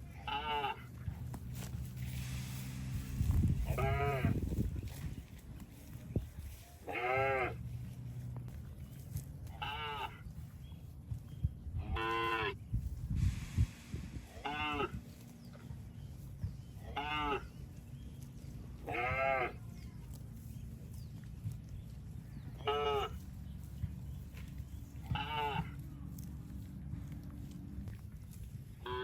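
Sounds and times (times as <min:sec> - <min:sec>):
steady low rumble: 0:00.0 - 0:29.0
cattle mooing: 0:06.9 - 0:07.6, 0:14.4 - 0:15.0, 0:16.8 - 0:17.5, 0:22.6 - 0:23.2.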